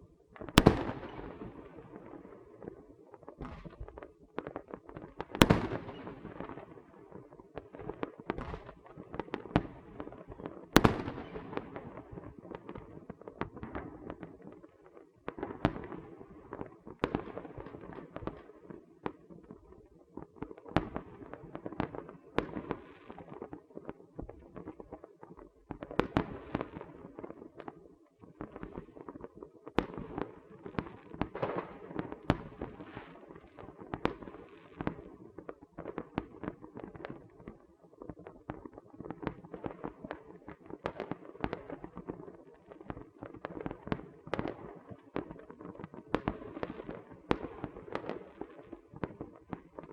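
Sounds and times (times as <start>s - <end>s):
continuous crackle: 0.0s - 49.9s
firecrackers popping and cracking: 0.4s - 1.9s, 8.3s - 14.1s.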